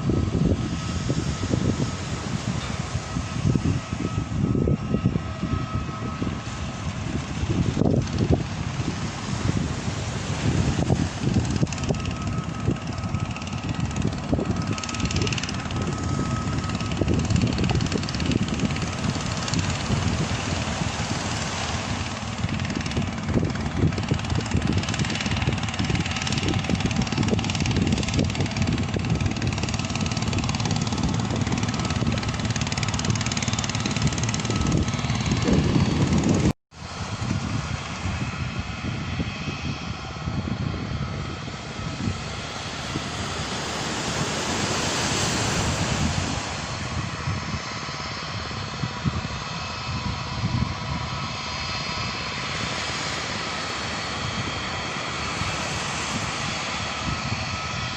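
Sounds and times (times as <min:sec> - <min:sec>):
jet airliner passing overhead: 0:00.0 - 0:57.9
wind buffeting microphone: 0:00.0 - 0:57.9.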